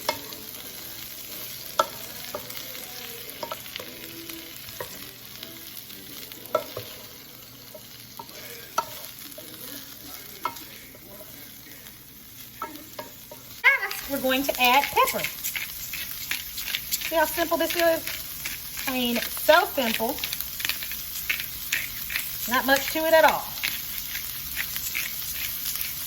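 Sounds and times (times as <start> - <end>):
food sizzling in a frying pan: 0.0 - 26.0
utensil knocking pan: 1.7 - 2.6, 6.5 - 7.0, 12.6 - 26.0.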